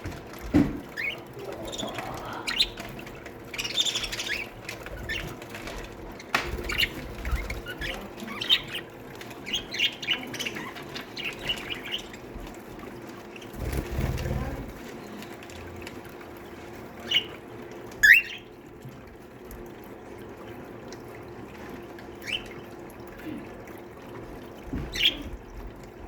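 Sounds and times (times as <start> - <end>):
wings flapping: 0.1 - 15.2
budgies chirping: 0.9 - 12.5, 17.0 - 17.4, 18.0 - 18.5, 24.8 - 25.3.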